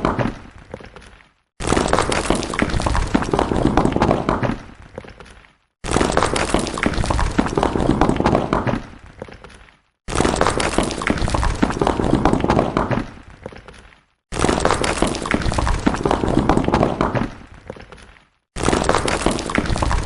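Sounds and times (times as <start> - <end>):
stones falling and clattering: 0.0 - 20.0.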